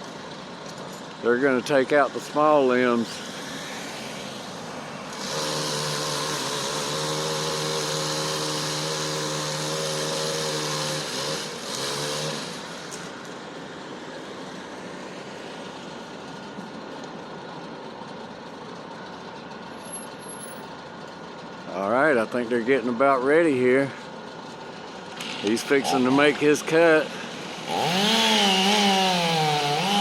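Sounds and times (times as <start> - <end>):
chainsaw cutting limbs: 2.4 - 13.3, 25.1 - 30.0.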